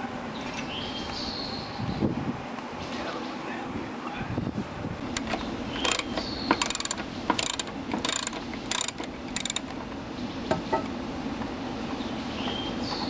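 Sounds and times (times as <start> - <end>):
ratchet wrench clicking: 5.2 - 9.8.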